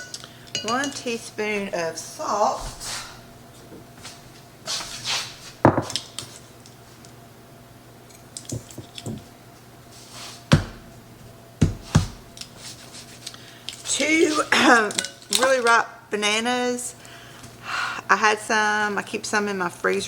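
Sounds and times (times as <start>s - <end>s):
kitchen utensils and dishes clinking: 13.8s - 15.7s.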